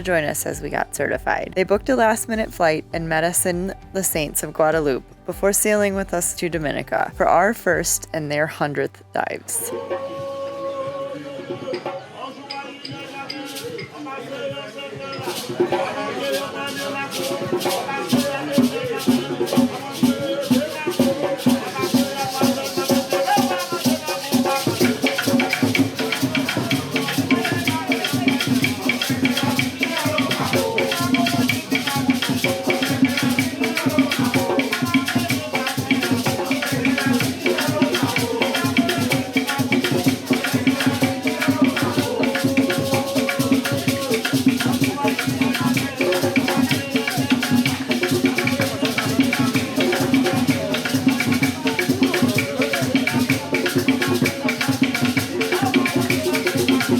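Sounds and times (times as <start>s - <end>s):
shaker and drum beat: 0.0s - 8.8s, 9.5s - 56.9s.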